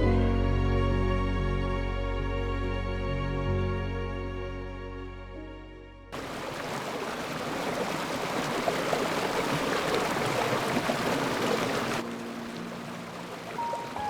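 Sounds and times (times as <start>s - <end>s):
stream water over stones: 6.2s - 14.0s.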